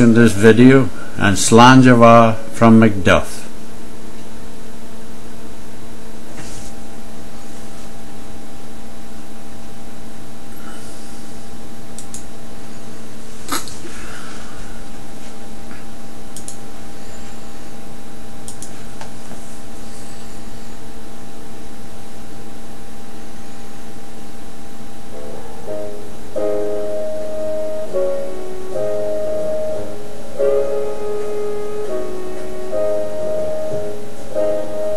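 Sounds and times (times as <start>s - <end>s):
piano notes: 0.0s - 3.6s, 25.0s - 34.9s
steady multi-tone hum: 0.0s - 34.9s
sharp clicks: 12.0s - 12.3s, 16.4s - 16.6s, 18.5s - 18.7s.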